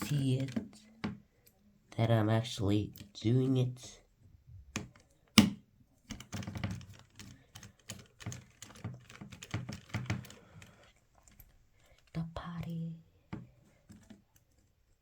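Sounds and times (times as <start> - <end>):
small screwdriver clicking and tapping: 4.7 - 7.1.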